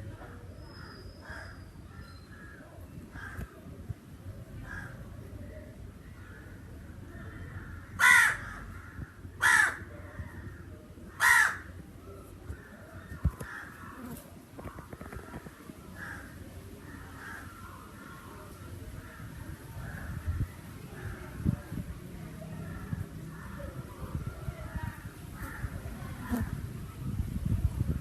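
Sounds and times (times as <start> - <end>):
distant crows cawing: 7.4 - 11.8, 12.6 - 18.3, 25.4 - 25.8
crows cawing: 7.8 - 11.7, 13.4 - 14.0, 16.0 - 18.2, 25.4 - 25.8.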